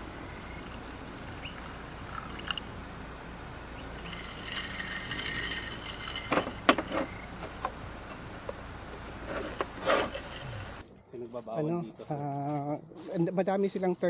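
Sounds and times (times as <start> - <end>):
chorus of forest insects: 0.0 - 14.0
sharp knocks: 6.2 - 7.8.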